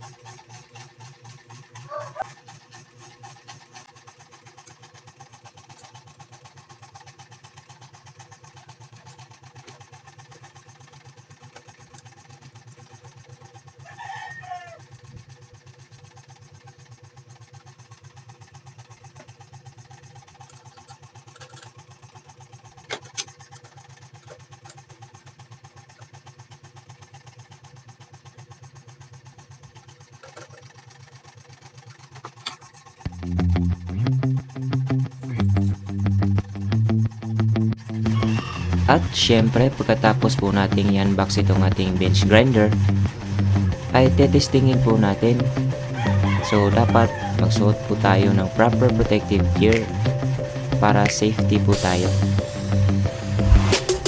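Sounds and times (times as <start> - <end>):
mechanical hum with flutter: 0.0 - 54.0
rooster crowing: 1.9 - 2.3, 13.8 - 14.9, 38.1 - 40.7, 45.8 - 48.7.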